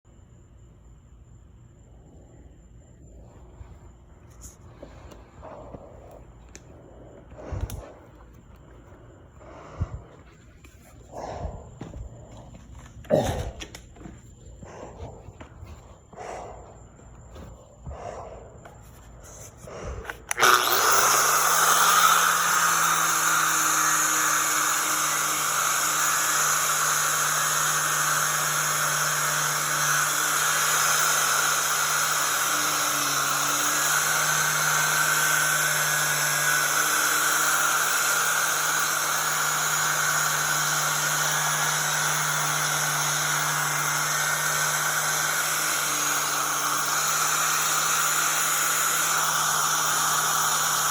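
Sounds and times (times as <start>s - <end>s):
angle grinder wire wheel scouring metal: 20.3s - 50.9s.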